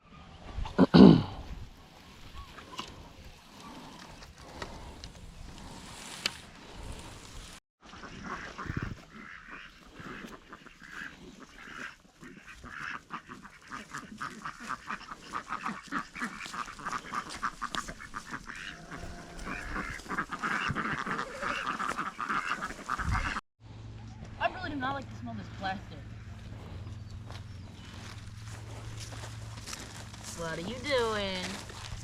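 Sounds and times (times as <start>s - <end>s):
waterfowl honking and quacking: 7.8s - 23.4s, 26.0s - 32.0s.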